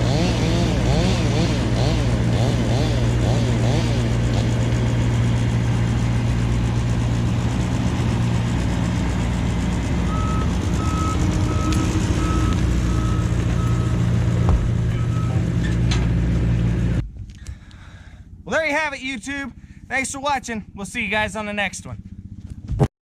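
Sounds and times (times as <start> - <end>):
truck engine running: 0.0 - 22.8
reversing alarm beeping: 10.0 - 15.4.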